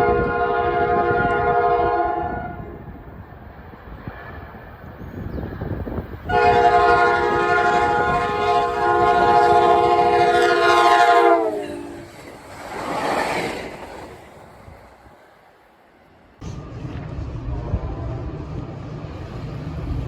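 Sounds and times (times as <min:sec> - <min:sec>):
locomotive air horn blast: 0:00.0 - 0:02.8, 0:06.3 - 0:12.1
rushing sound: 0:11.6 - 0:20.0.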